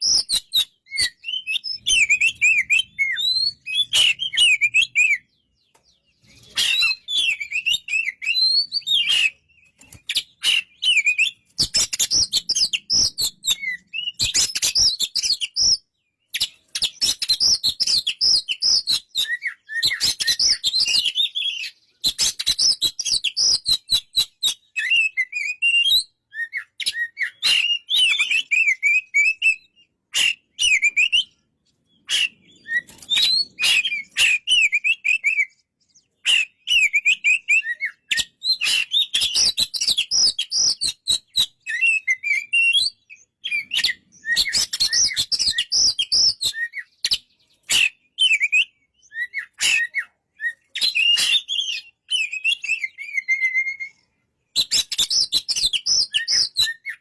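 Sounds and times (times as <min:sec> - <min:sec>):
bird warbling song: 0:00.0 - 0:57.0.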